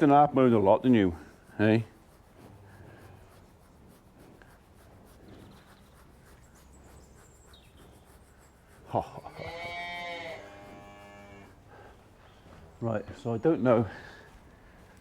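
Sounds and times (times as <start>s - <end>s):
cow mooing: 9.4s - 11.6s.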